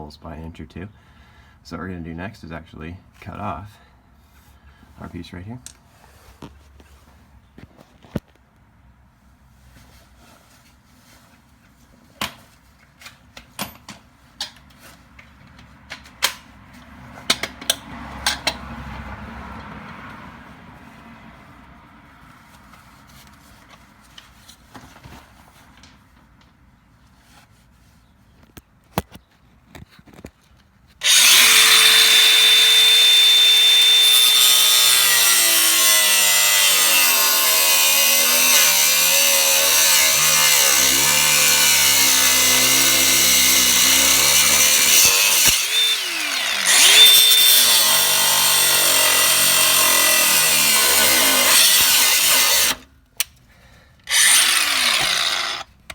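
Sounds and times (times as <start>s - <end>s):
angle grinder cutting steel: 31.0s - 52.8s, 54.1s - 55.7s.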